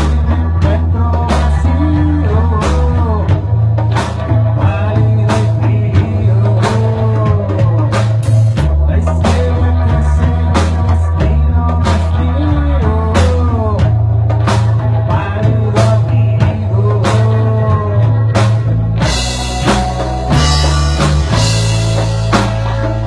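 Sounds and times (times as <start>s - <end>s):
drum kit: 0.0s - 23.0s
heavy bass: 0.0s - 23.0s
gliding melodic line: 18.9s - 23.0s.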